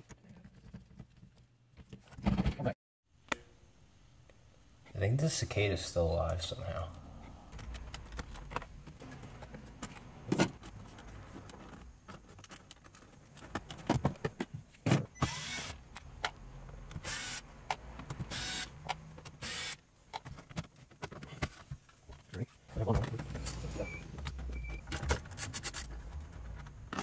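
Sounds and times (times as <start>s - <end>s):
parts being handled: 6.3s - 15.1s, 15.9s - 27.0s.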